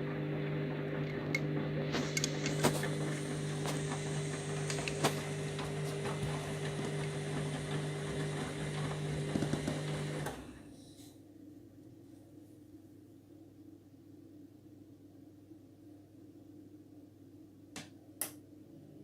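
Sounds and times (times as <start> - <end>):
washing machine drain pump humming: 0.0 - 10.8.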